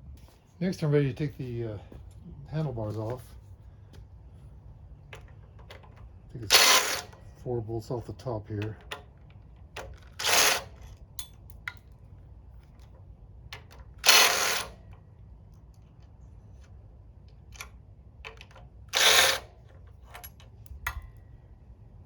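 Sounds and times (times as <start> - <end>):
power tool bursts: 6.5 - 7.1, 10.2 - 10.7, 14.0 - 14.8, 18.9 - 19.5.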